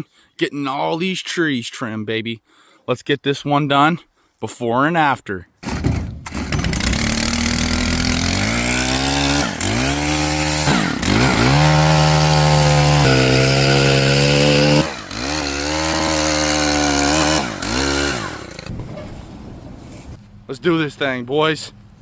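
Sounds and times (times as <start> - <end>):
chainsaw cutting branches: 5.6 - 18.8.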